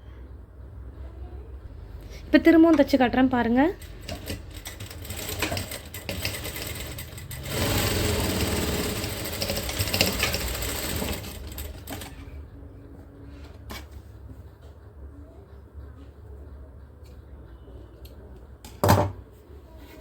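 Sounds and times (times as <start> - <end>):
sewing machine stitching: 3.8 - 12.3.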